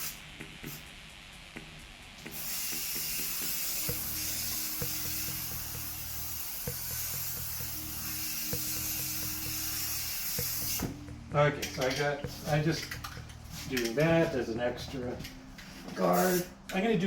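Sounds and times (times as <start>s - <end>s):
aerosol can spraying: 0.0s - 0.9s, 2.2s - 11.1s, 16.0s - 16.5s.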